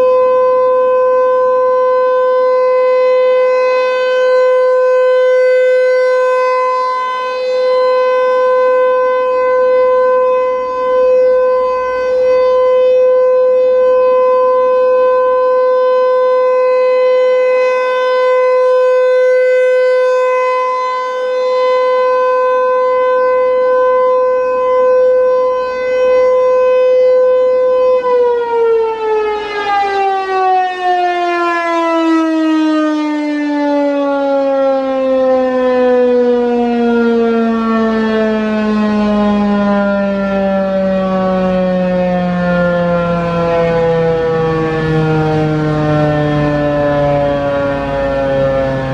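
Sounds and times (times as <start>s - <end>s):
siren winding down: 0.0s - 48.9s
warning siren steady tone: 0.0s - 48.9s.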